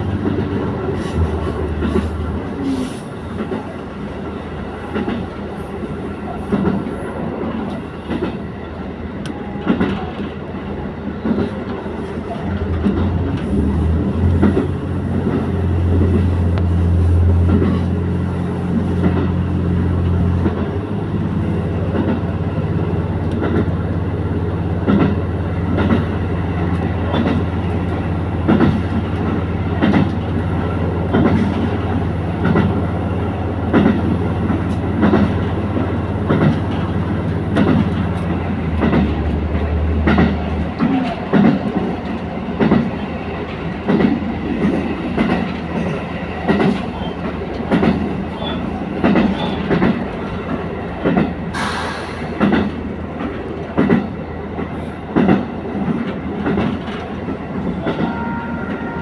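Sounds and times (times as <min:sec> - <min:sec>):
diesel train engine drone: 0:00.0 - 0:59.0
rail-joint clickety-clack: 0:00.0 - 0:59.0.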